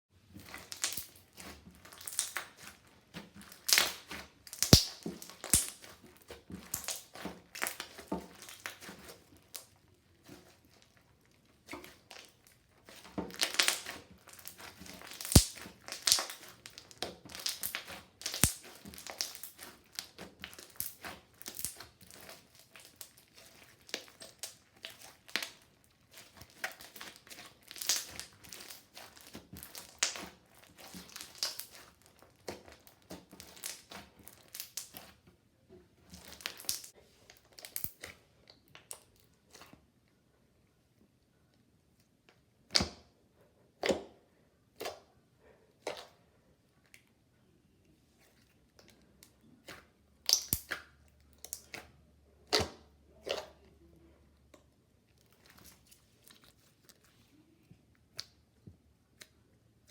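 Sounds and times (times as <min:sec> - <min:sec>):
slime squishing and crackling: 0:00.2 - 0:35.2, 0:36.2 - 0:38.2, 0:49.7 - 0:51.9, 0:55.1 - 0:57.4.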